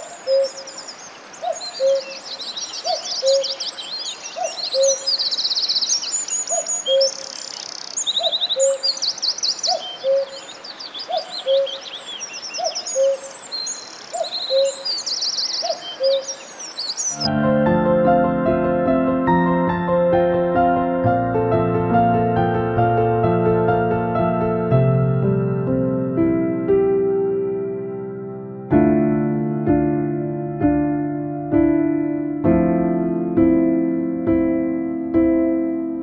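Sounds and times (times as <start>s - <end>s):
songbirds chirping and trilling: 0.0s - 17.3s.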